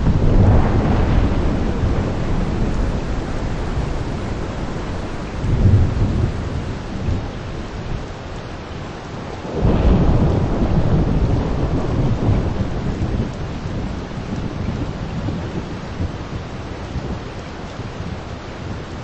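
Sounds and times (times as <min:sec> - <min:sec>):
thunder rumbling: 0:00.0 - 0:18.8
heavy rain: 0:00.0 - 0:19.0.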